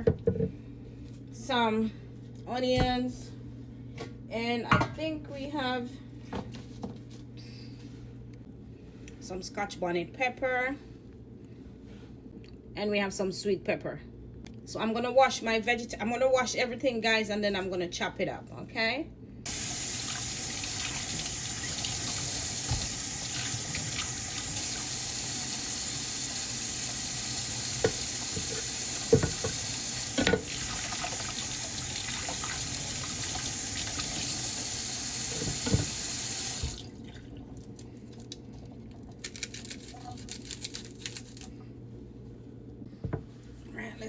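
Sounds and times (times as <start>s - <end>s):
tap running into a sink: 19.5s - 24.9s, 26.9s - 34.4s, 35.2s - 36.9s
knocks against a sink: 27.8s - 29.6s.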